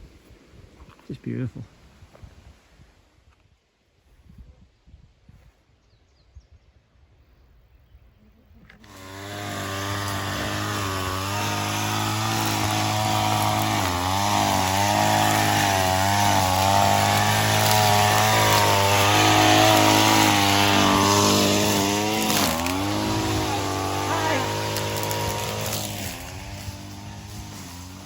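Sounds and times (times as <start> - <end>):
string trimmer engine revving: 8.7 - 28.0.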